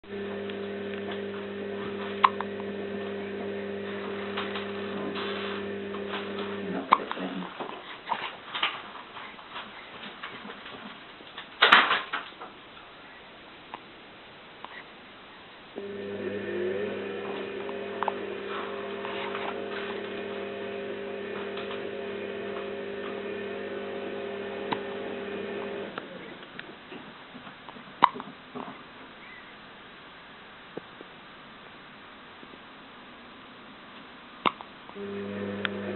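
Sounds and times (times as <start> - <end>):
steady electrical hum: 0.0 - 7.6, 15.5 - 27.3, 34.8 - 35.9.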